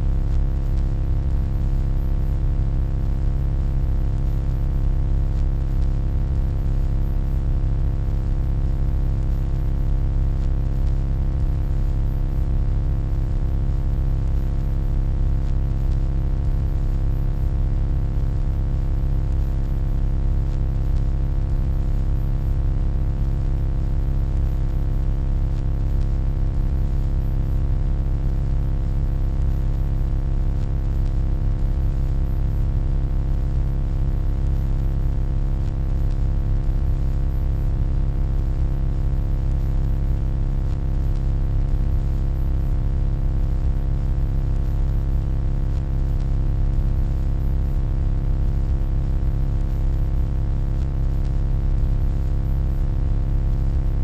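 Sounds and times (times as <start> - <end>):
deep electronic hum: 0.0 - 2.7.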